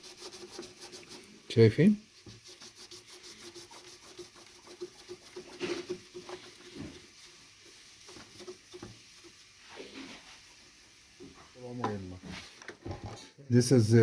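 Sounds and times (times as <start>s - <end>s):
rubbing and scrubbing: 0.0s - 11.6s.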